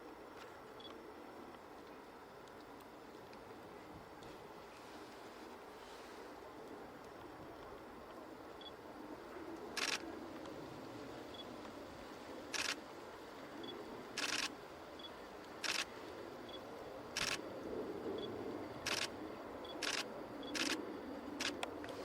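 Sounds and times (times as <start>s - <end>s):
low background noise: 0.0s - 22.0s
camera shutter clicks: 9.8s - 10.0s, 12.5s - 12.8s, 14.2s - 14.5s, 15.6s - 15.9s, 17.2s - 17.4s, 18.8s - 19.1s, 19.8s - 20.8s, 21.4s - 21.7s.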